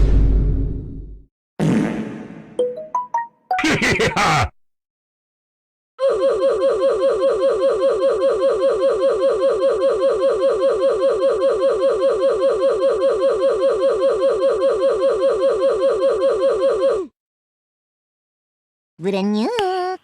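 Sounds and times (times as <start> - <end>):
repeating laugh-like sound effect: 3.5 - 4.5, 6.0 - 17.1.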